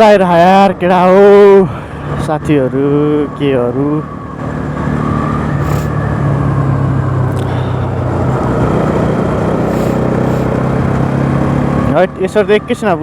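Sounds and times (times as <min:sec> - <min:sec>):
motorcycle engine running: 0:04.1 - 0:12.6.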